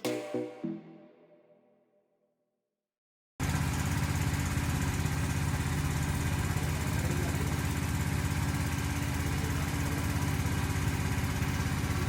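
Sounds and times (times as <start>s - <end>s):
small petrol engine running: 3.4s - 12.0s.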